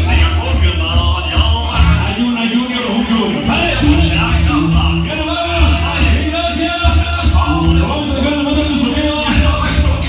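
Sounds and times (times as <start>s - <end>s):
loud dance music: 0.0s - 10.0s.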